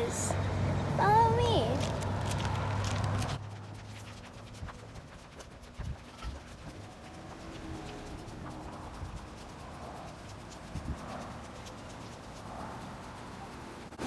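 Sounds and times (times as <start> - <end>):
footsteps walking: 1.0 - 3.4.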